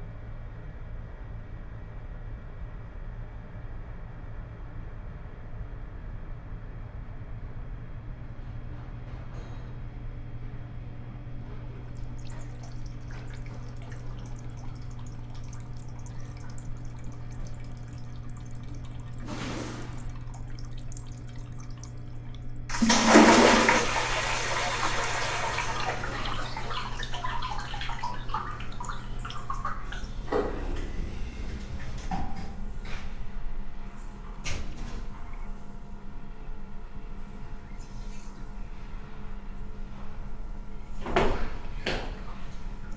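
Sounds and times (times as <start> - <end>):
toilet flushing: 11.8 - 42.9
low hum: 25.4 - 42.9.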